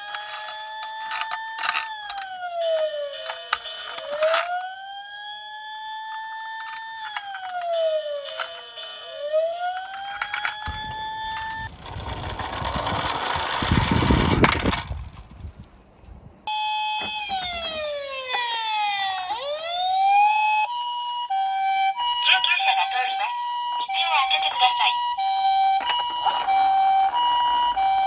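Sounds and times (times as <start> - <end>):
toy cars rolling down a slope: 0.0 - 4.6, 6.5 - 8.7, 9.6 - 15.3, 24.4 - 28.0
toy siren wailing: 0.0 - 14.8, 16.5 - 28.0.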